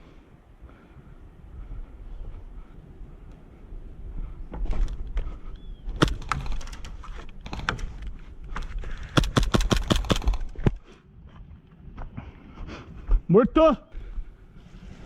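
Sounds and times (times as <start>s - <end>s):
airsoft pistol shots: 6.0s - 6.7s, 9.1s - 10.6s.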